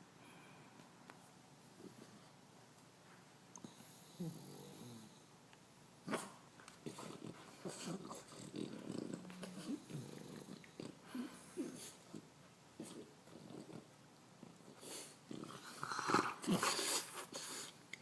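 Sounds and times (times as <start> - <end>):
pet snoring: 3.7 - 5.3, 6.8 - 12.2, 12.8 - 17.1.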